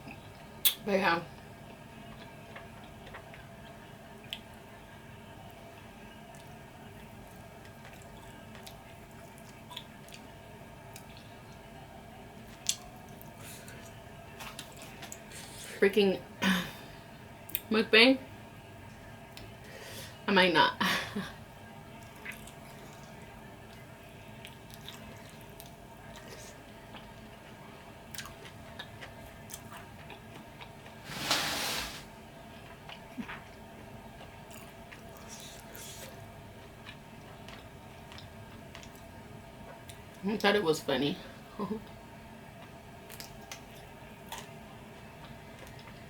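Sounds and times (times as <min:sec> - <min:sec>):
chewing chicken wings: 0:05.5 - 0:11.7, 0:12.4 - 0:15.6, 0:21.9 - 0:27.5, 0:28.1 - 0:31.0, 0:32.5 - 0:40.2, 0:42.6 - 0:46.0
brief hiss-like noise: 0:31.0 - 0:32.1.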